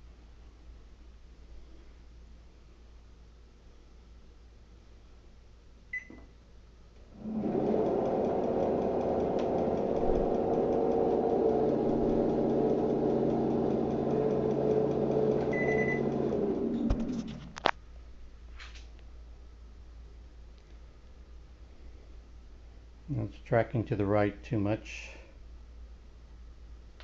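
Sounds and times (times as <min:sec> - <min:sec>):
treadmill motor humming: 0:07.0 - 0:17.7.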